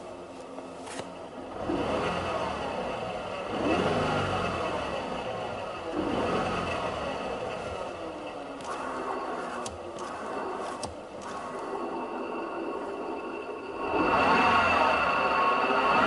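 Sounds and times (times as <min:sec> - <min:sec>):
clutch noise: 0:00.9 - 0:12.7
car engine revving: 0:01.4 - 0:16.0.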